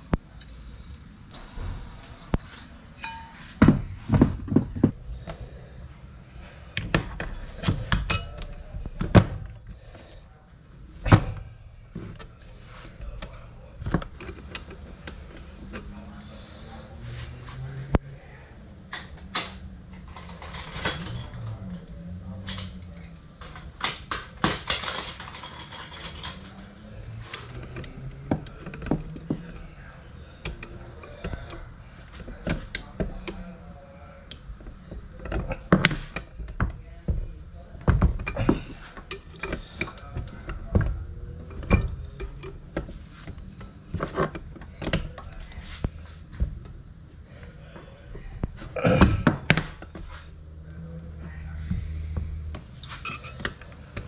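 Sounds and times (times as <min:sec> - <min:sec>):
metal clinking on metal: 0:03.0 - 0:03.5, 0:23.8 - 0:26.6.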